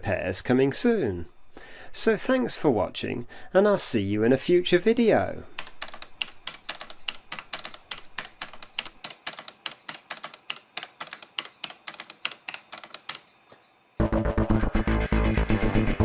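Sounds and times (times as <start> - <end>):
calculator keys clicking: 5.6 - 13.3
loud music: 14.0 - 16.0.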